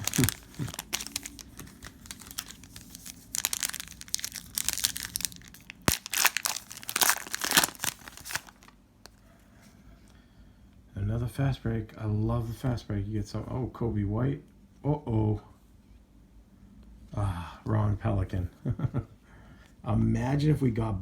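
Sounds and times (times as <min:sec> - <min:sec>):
cards shuffling: 0:00.0 - 0:08.7
foil wrapper tearing and crinkling: 0:00.0 - 0:09.2.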